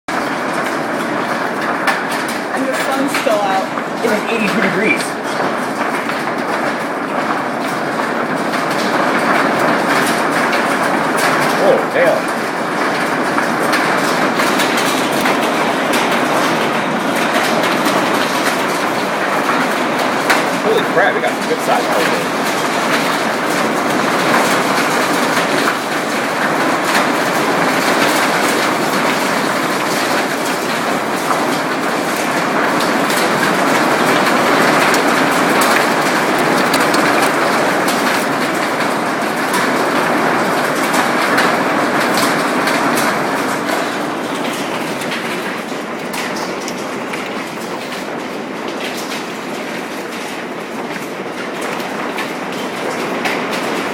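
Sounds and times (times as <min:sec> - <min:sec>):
hailstones clattering: 0:00.1 - 0:53.9.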